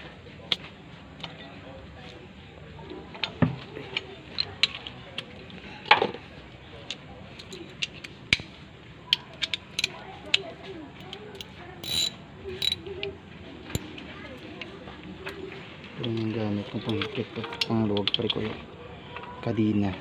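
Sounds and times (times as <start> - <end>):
metallic clicks and clinks: 9.1 - 14.0, 14.6 - 18.6.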